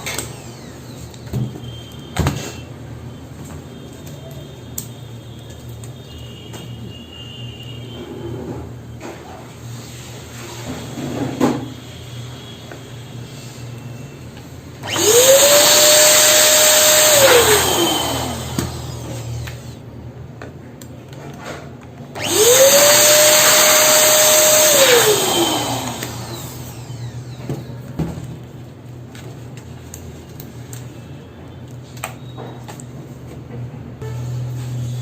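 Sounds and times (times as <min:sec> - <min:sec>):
balloon pump motor whine: 0:00.0 - 0:02.3, 0:14.8 - 0:19.9, 0:22.1 - 0:28.1.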